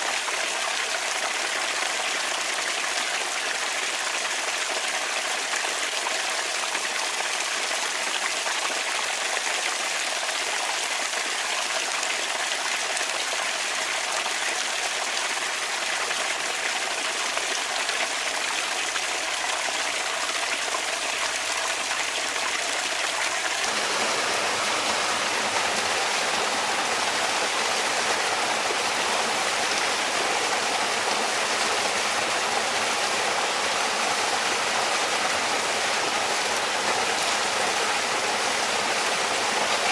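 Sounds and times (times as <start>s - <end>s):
water trickling from fountain: 16.3s - 39.9s.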